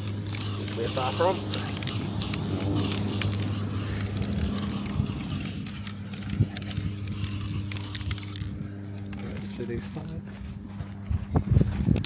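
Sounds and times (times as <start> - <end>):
aerosol spray can hissing: 0.0 - 8.4
low hum: 0.0 - 12.0.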